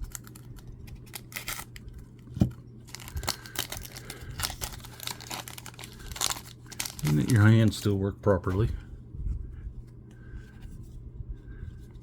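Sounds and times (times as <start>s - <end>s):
wrappers crinkling and tearing: 0.0s - 2.2s, 2.8s - 8.0s.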